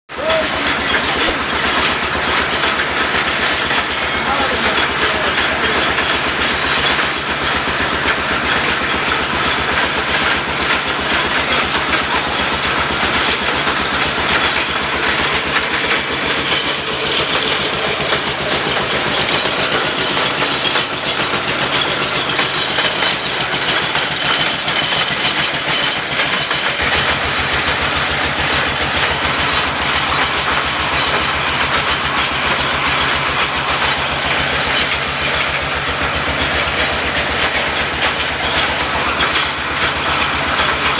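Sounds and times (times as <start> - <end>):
drilling machine hammering: 0.1 - 40.9.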